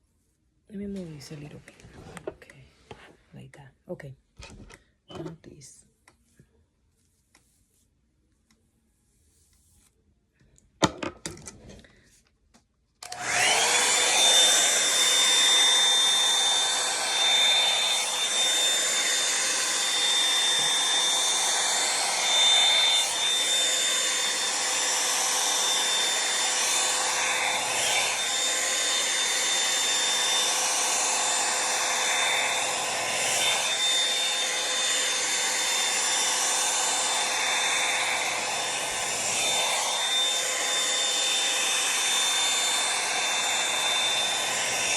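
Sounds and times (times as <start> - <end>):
hair dryer brush motor whine: 13.0 - 44.9.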